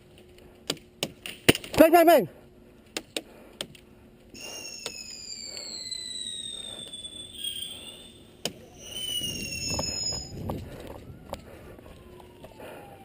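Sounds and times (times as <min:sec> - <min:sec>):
falling whistle: 0:04.4 - 0:10.6.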